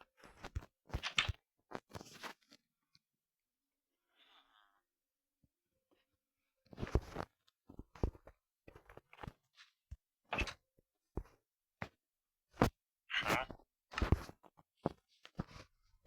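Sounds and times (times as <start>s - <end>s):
irregular knocks and rustles: 6.8s - 10.6s.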